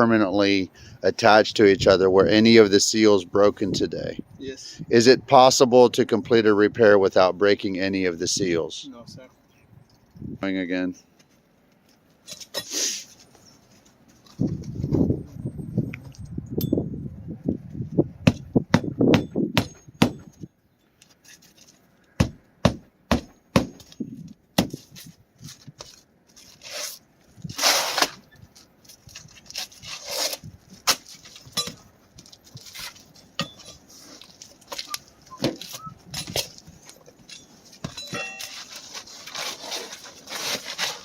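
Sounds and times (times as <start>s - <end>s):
hand tools knocking on roof shingles: 22.2s - 23.9s
scraping rubs on shingles: 38.4s - 41.0s.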